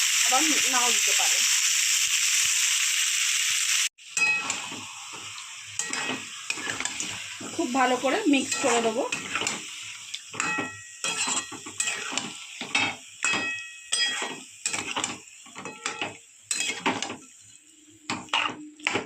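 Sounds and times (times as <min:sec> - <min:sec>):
metal spatula clanking on pan: 0:04.1 - 0:07.6, 0:08.4 - 0:09.7, 0:10.3 - 0:17.3, 0:18.1 - 0:19.0.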